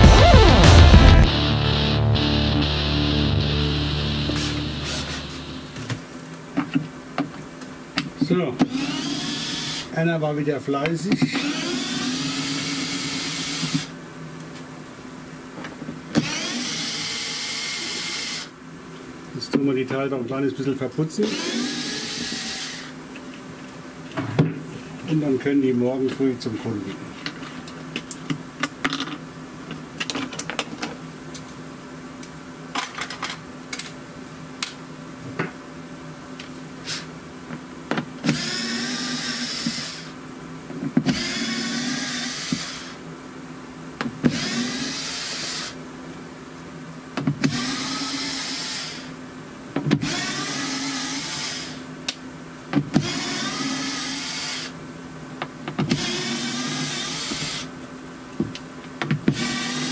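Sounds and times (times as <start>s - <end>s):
steady background hum: 2.9s - 59.9s
handheld power tool whining: 3.6s - 5.8s, 8.6s - 9.9s, 11.2s - 13.9s, 16.1s - 18.5s, 21.2s - 22.9s, 38.2s - 40.1s, 41.0s - 43.0s, 44.2s - 45.8s, 47.4s - 49.1s, 49.9s - 51.8s, 52.9s - 54.8s, 55.8s - 57.7s, 59.2s - 59.9s.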